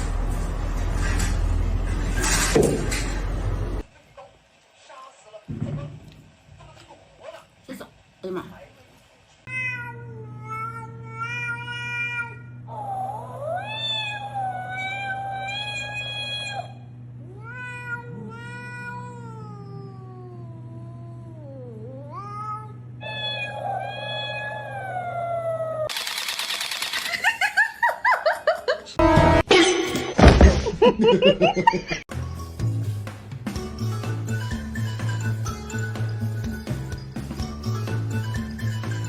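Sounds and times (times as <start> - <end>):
cat meowing: 9.5 - 25.9.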